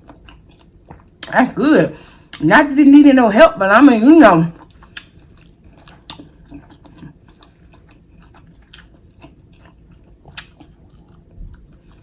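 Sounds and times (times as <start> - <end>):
chewing and biting food: 0.0 - 1.3, 4.5 - 12.0
wet mouth clicks: 5.9 - 6.3.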